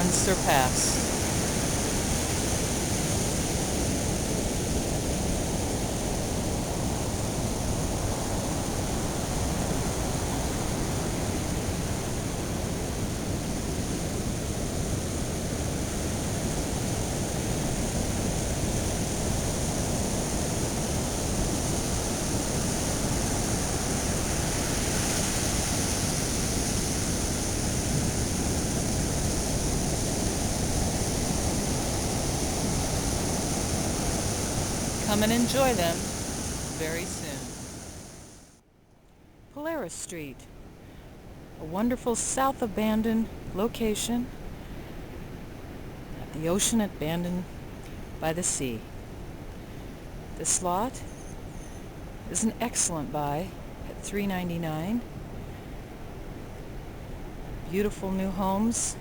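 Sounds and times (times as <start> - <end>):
ocean surf rushing: 0.0 - 38.5.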